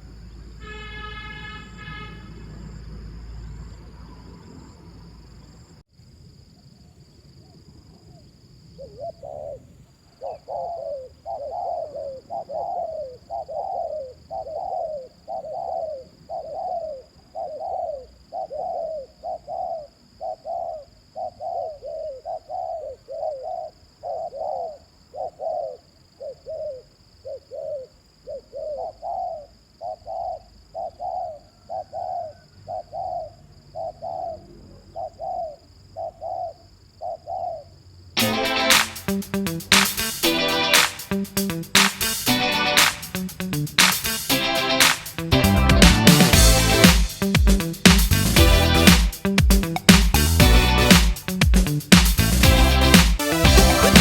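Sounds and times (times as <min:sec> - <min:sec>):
dove cooing rapidly: 0:08.8 - 0:37.7.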